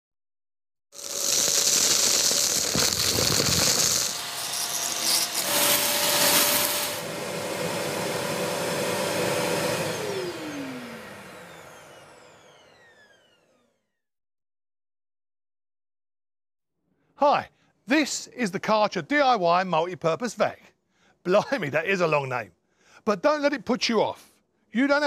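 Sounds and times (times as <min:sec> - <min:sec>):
vacuum cleaner motor running: 0:01.0 - 0:14.0.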